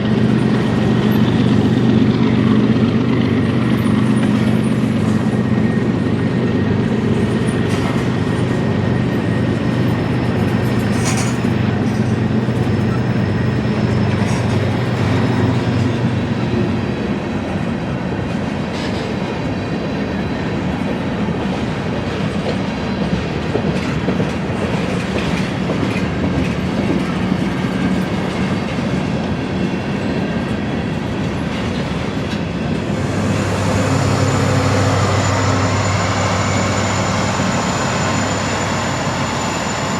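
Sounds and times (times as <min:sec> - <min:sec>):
locomotive engines droning: 0:00.0 - 0:19.1, 0:21.5 - 0:39.9
train wheels clicking over rail joints: 0:07.1 - 0:16.8, 0:22.0 - 0:29.2.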